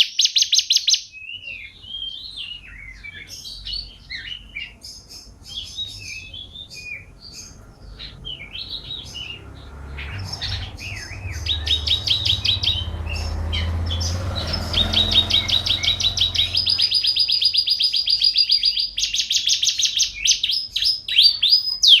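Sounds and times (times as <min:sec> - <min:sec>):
canary singing and trilling: 0:00.0 - 0:22.0
low rumble: 0:07.8 - 0:17.1.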